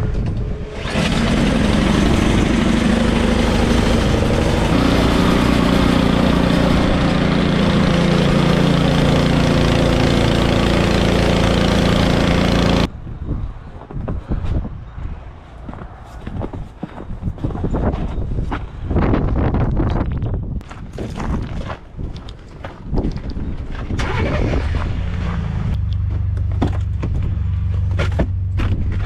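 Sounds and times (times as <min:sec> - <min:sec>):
engine running: 0:00.0 - 0:12.9, 0:23.7 - 0:29.0.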